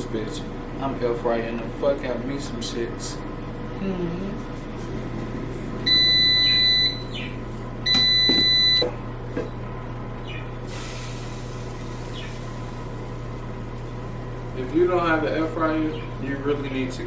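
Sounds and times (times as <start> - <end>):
low steady hum: 0.0 - 17.0
air fryer electronic beeps: 5.8 - 9.0, 10.3 - 12.9.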